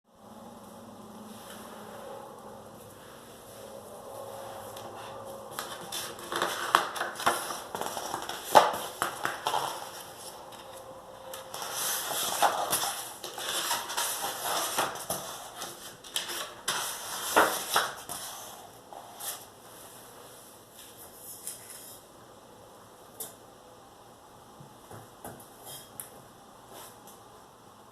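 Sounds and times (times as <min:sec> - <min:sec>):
paper rustling and crinkling: 0:04.8 - 0:10.8, 0:11.4 - 0:18.5.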